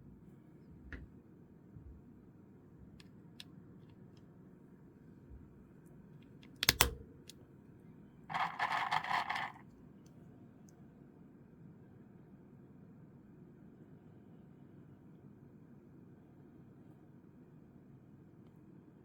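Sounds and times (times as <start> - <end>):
sharp plastic snap: 6.4 - 7.4
small switch clicks: 6.4 - 7.4
rapid rattling clicks: 8.3 - 9.6.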